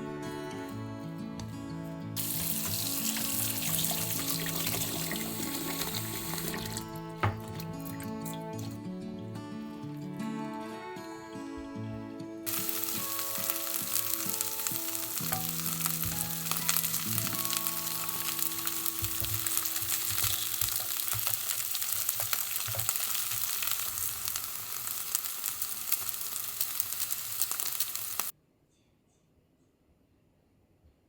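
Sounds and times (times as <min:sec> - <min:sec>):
soft music: 0:00.0 - 0:21.5
food sizzling in hot oil: 0:02.2 - 0:06.9, 0:12.5 - 0:28.3.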